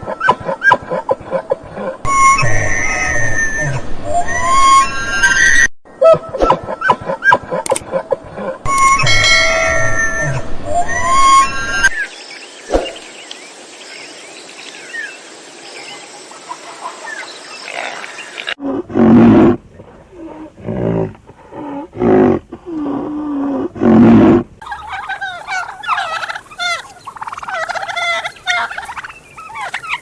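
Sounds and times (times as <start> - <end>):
birds chirping: 11.9 - 18.4, 24.6 - 30.0
loud drawn-out animal calls: 24.6 - 30.0.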